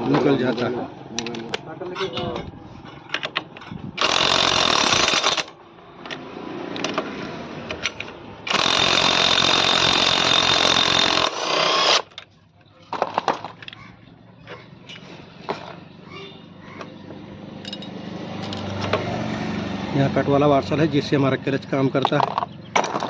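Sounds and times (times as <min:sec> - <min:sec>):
power tool running: 0:04.0 - 0:05.6, 0:08.5 - 0:12.1
metallic clicks of tools: 0:17.6 - 0:18.9.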